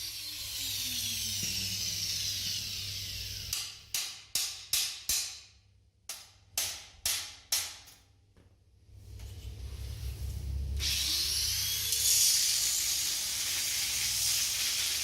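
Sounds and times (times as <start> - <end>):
air blow gun hissing: 10.8 - 15.0.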